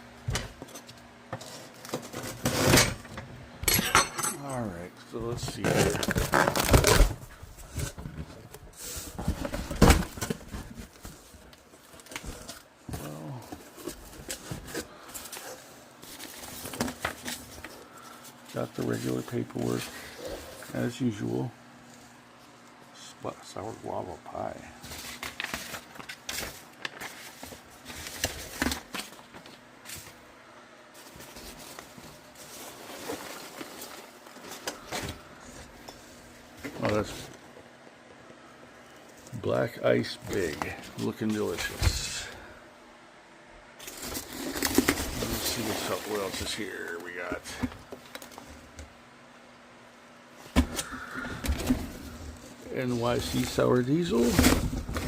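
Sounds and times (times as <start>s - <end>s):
packaging rustling: 5.4s - 20.9s, 24.8s - 30.2s, 30.9s - 35.8s, 43.8s - 48.5s.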